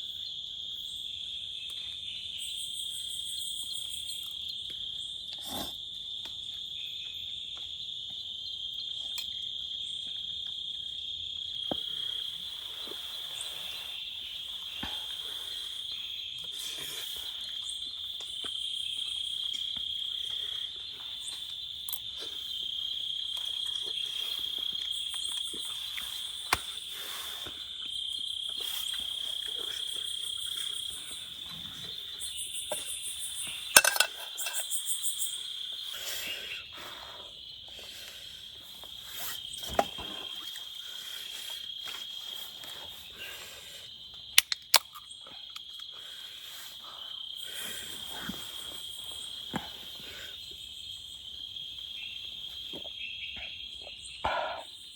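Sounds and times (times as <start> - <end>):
insects trilling: 0.0 - 54.9.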